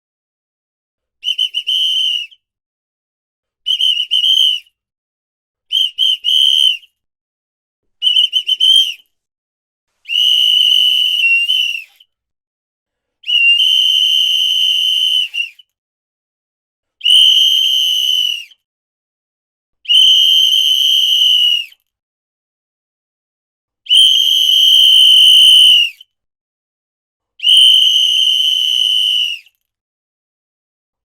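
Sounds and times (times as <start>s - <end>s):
shrill whistle blasts: 1.2s - 2.4s, 3.7s - 4.7s, 5.7s - 6.9s, 8.0s - 9.1s, 10.1s - 12.1s, 13.2s - 15.7s, 17.0s - 18.6s, 19.8s - 21.8s, 23.9s - 26.1s, 27.4s - 29.6s.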